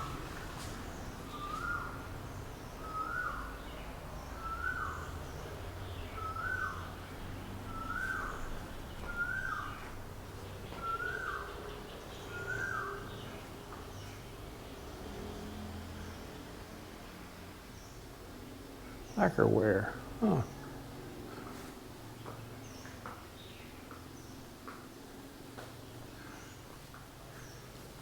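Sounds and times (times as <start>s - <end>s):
bird whistled call: 7.7s - 8.4s.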